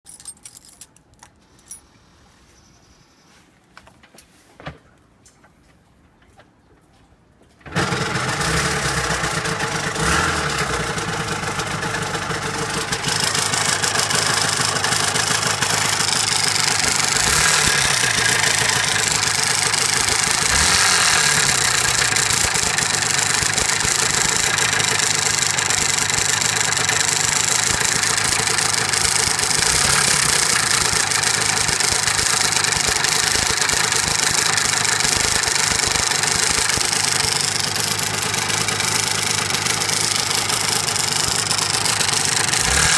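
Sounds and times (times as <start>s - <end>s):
engine clattering click-clack: 7.7s - 42.9s
motorcycle engine idling: 7.7s - 42.9s.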